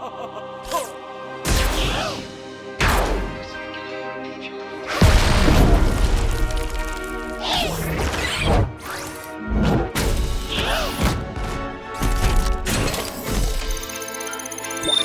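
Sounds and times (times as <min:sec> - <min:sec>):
cartoon background music: 0:00.0 - 0:15.0
crash and thump effects: 0:05.0 - 0:08.7.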